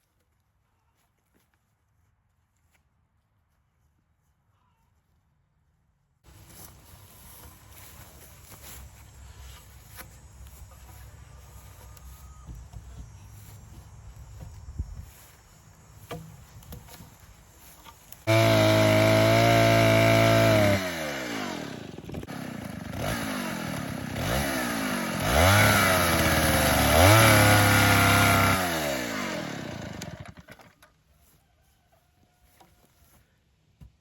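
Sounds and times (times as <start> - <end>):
chainsaw cutting wood: 16.0 - 30.9.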